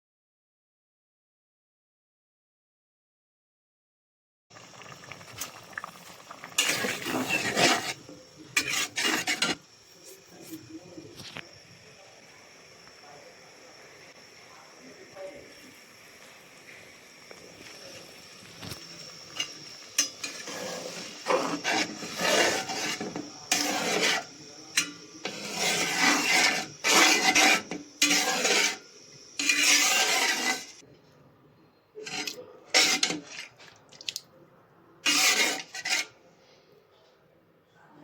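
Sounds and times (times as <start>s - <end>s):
utensil scraping metal pot: 4.6s - 11.6s, 18.5s - 30.8s, 32.0s - 33.8s, 35.0s - 36.2s.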